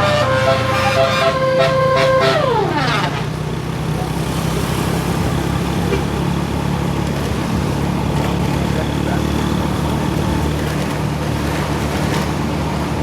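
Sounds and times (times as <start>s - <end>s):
musical bus horn: 0.0s - 4.0s
bus engine running: 0.0s - 13.0s
road noise: 0.0s - 13.0s.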